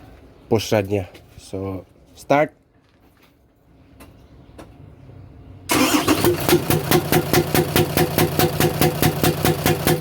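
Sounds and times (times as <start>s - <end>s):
diesel engine cranking: 5.7s - 10.0s
diesel engine rhythmic knocking: 6.4s - 10.0s.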